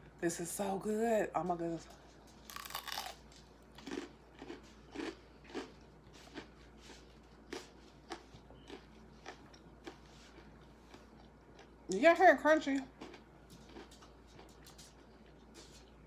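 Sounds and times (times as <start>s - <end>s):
person chewing crunchy food: 2.4s - 11.9s, 12.9s - 16.0s.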